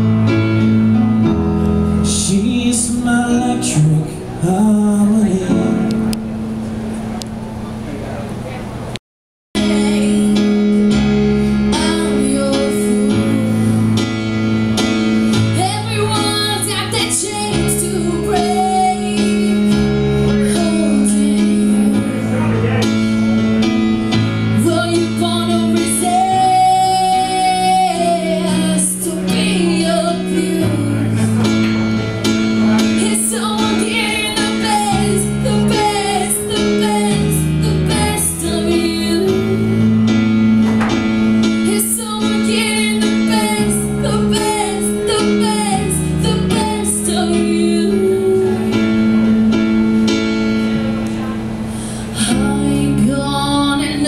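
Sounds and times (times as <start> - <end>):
bass line: 0.0 - 9.0, 9.6 - 54.0
plucked guitar: 3.6 - 8.0, 9.6 - 54.0
woman singing: 9.6 - 14.2, 15.3 - 22.3, 24.5 - 31.3, 32.9 - 39.9, 41.6 - 49.0, 52.1 - 54.0.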